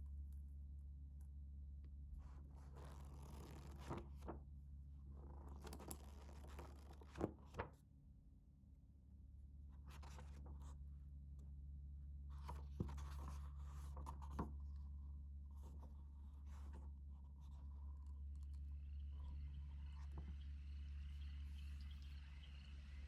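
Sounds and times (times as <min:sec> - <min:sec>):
steady low hum: 0:14.8 - 0:23.0.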